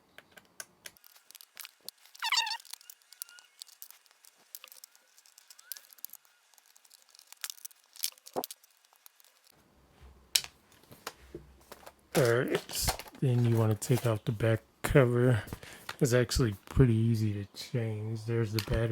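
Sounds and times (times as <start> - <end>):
brief pitched squeak: 2.2 - 3.6.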